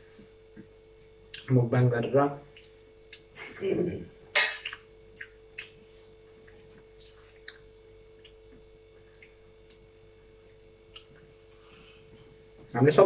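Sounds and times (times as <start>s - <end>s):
faint hum: 0.0s - 13.0s
wet chewing and mouth smacks: 2.5s - 3.4s, 4.4s - 11.3s.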